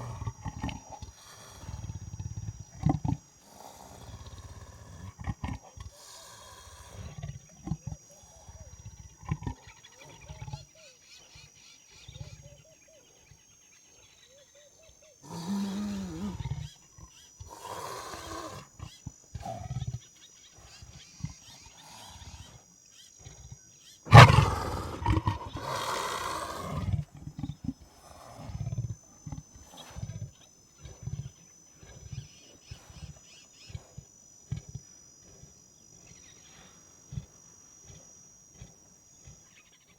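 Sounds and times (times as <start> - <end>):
leopard growling roars: 17.5 - 18.8, 24.1 - 32.1
leopard rasping grunts: 24.1 - 39.6.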